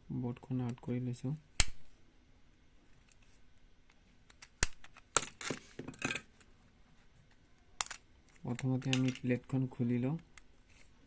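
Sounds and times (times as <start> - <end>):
phone parts clicking: 7.8 - 9.5.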